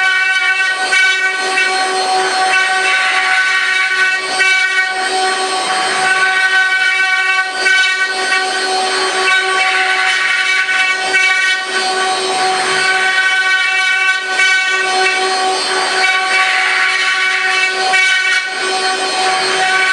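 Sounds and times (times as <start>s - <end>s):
router spindles whining: 0.0s - 19.9s.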